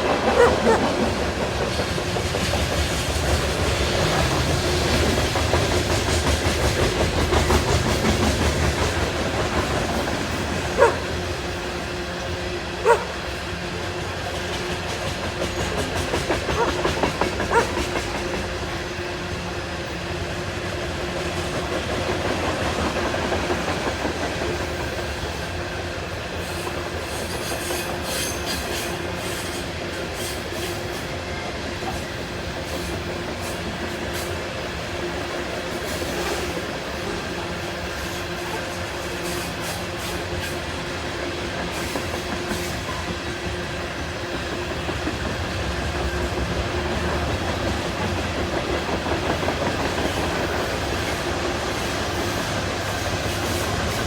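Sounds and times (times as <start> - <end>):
wheels clicking over rail joints: 0.0 - 11.9, 14.2 - 18.6
train wheels rumbling on rails: 0.0 - 54.0.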